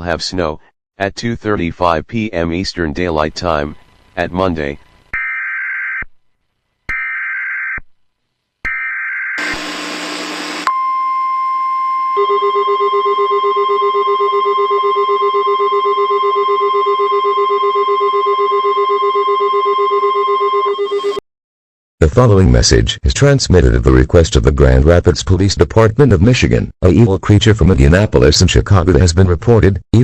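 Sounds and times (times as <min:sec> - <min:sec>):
steady warning alarm tone: 0:05.2 - 0:06.0, 0:06.9 - 0:07.8, 0:08.7 - 0:21.2
screechy digital data bursts: 0:06.9 - 0:07.8, 0:08.7 - 0:10.6
radio static: 0:09.4 - 0:10.6.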